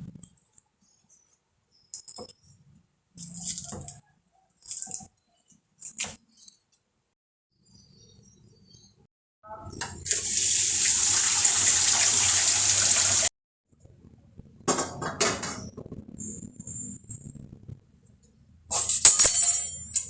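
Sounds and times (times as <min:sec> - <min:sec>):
water running from a tap: 0:10.0 - 0:13.3.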